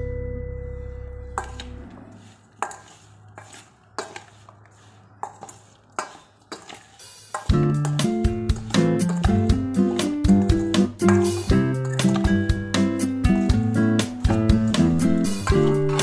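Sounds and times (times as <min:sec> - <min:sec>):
guitar background music: 0:00.0 - 0:01.9, 0:07.4 - 0:16.0
utensil clinking against a dish: 0:01.3 - 0:16.0.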